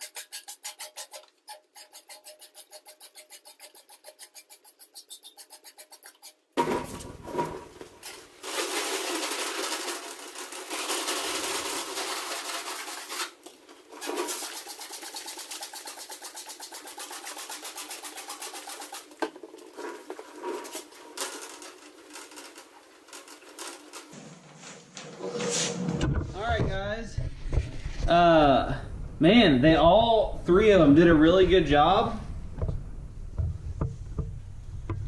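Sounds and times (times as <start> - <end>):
cleaning pad scrubbing metal: 0.0 - 24.2.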